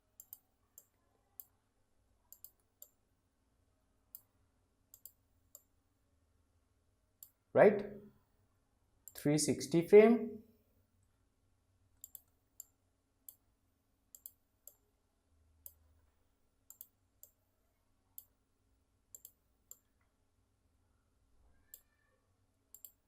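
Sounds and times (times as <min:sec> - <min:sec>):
computer mouse clicking: 0:00.2 - 0:01.5, 0:02.3 - 0:03.0, 0:04.9 - 0:05.7, 0:12.0 - 0:13.4, 0:14.1 - 0:14.8, 0:16.7 - 0:17.4, 0:19.1 - 0:20.1, 0:22.7 - 0:23.0.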